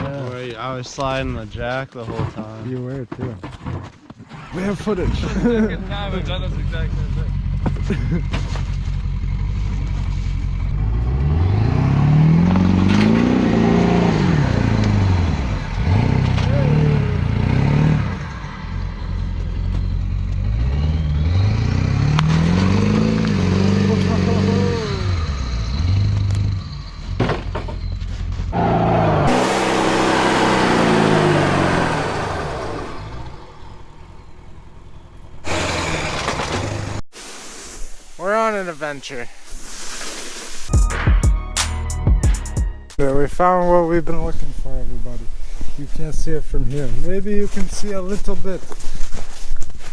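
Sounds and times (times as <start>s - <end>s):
vehicle engine revving: 4.4s - 27.2s, 27.8s - 37.1s.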